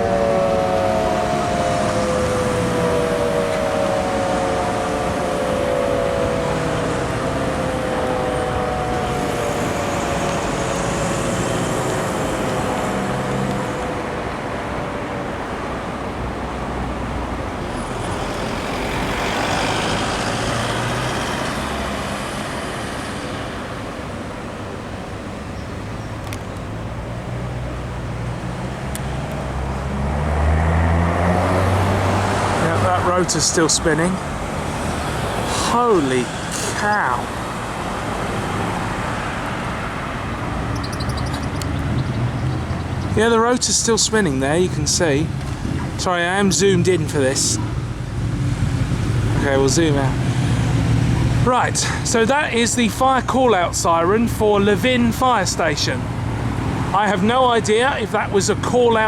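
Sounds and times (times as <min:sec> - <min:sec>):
rotary siren winding down: 0:00.0 - 0:14.1
road traffic: 0:00.0 - 0:59.0
vehicle passing: 0:00.0 - 0:59.0.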